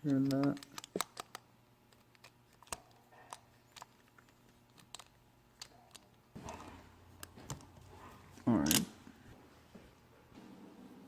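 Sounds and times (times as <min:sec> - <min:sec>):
small metal parts clicking: 0:00.0 - 0:06.2.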